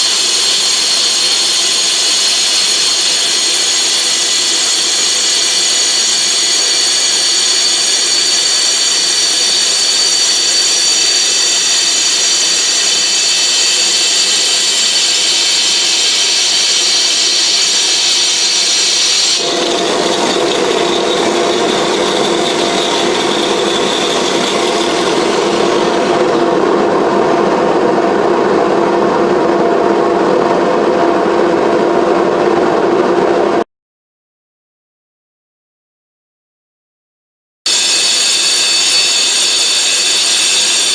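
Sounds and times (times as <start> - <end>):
grinding glass: 0.0 - 26.4, 37.7 - 40.9
angle grinder whine: 0.0 - 29.8, 37.7 - 40.9.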